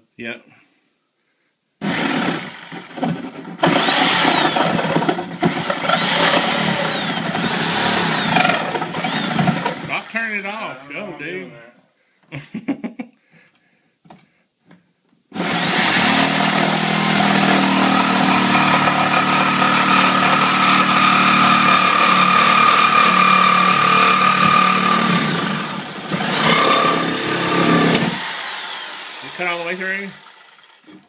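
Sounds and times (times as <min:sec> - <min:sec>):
reciprocating saw cutting drywall: 0:01.8 - 0:10.8, 0:15.3 - 0:31.0.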